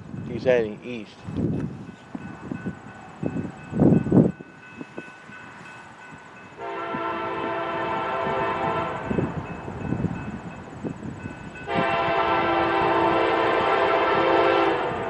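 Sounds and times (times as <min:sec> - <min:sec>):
locomotive air horn blast: 0:06.6 - 0:09.4, 0:11.7 - 0:15.0.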